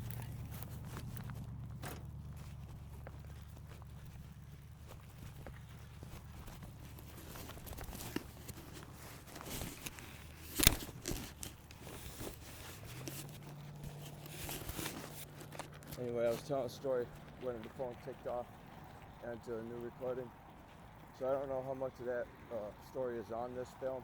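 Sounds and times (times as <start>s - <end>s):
footsteps crunching: 0.0s - 24.0s
low steady hum: 0.0s - 24.0s.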